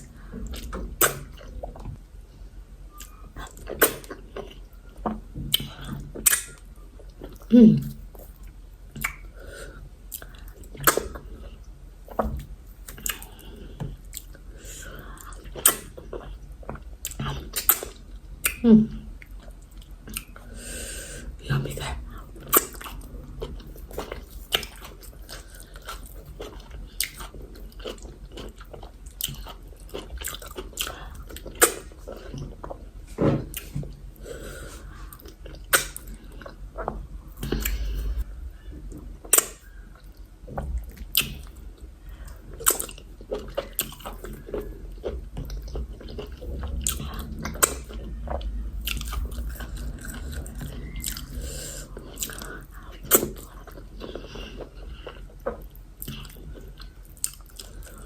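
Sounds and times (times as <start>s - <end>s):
chewing and lip smacking: 21.8s - 32.8s, 39.2s - 58.0s.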